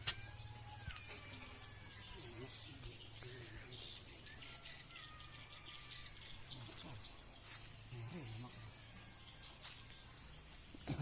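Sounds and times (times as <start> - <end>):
insect trilling high: 0.0 - 7.3
insect chirping in quick pulses: 0.0 - 11.0.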